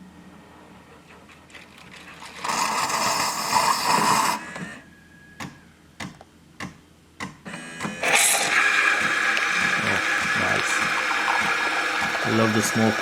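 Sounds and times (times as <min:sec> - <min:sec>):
coffee machine hissing and whirring: 0:02.2 - 0:04.8, 0:07.5 - 0:13.0.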